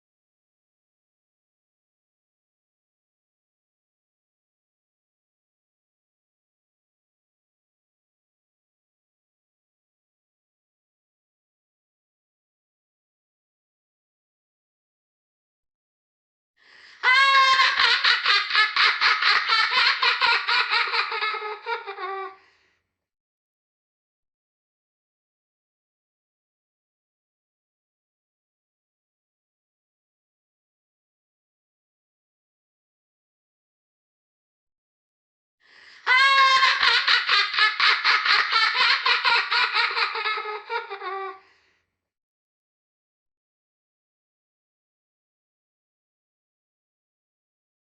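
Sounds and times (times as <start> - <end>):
child laughing: 17.0 - 22.4, 36.0 - 41.4.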